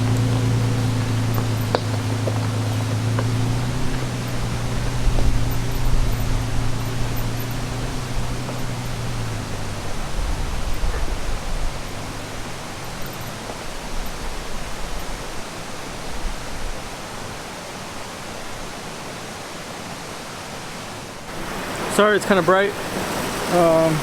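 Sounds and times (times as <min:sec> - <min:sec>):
truck engine hum: 0:00.0 - 0:15.6, 0:21.3 - 0:24.0
stream flowing: 0:00.0 - 0:24.0.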